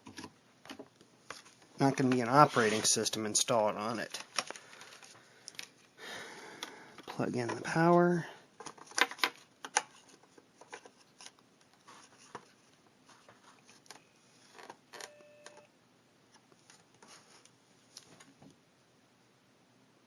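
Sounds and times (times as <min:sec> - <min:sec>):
faint electronic tone: 0:15.0 - 0:15.7.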